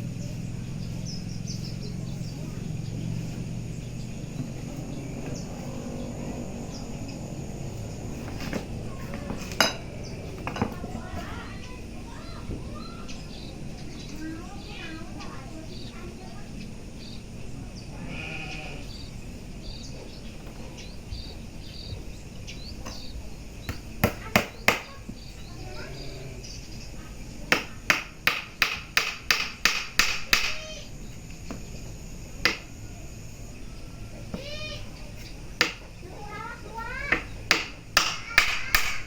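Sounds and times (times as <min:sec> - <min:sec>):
sharp ringing knocks: 0:37.1 - 0:39.0.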